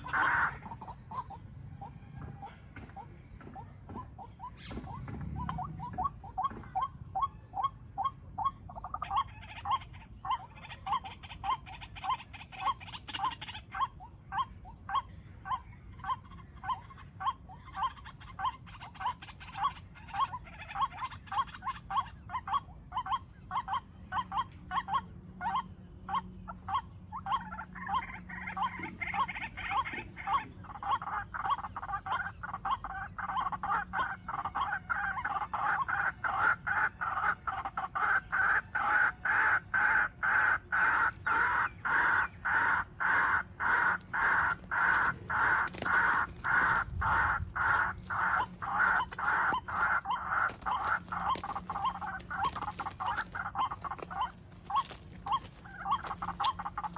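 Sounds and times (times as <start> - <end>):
waterhen calling: 0.0 - 2.6, 42.1 - 56.9.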